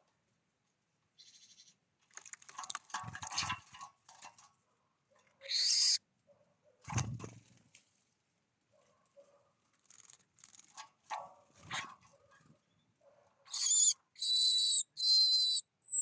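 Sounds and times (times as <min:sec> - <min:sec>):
birds noisy bursts: 0:13.5 - 0:15.6.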